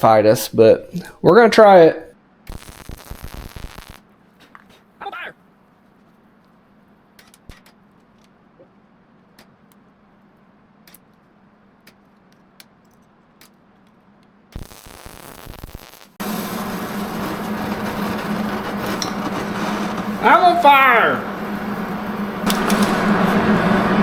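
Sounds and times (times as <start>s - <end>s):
welding arc hissing: 2.5s - 4.0s, 14.5s - 24.0s
low hum: 14.6s - 24.0s.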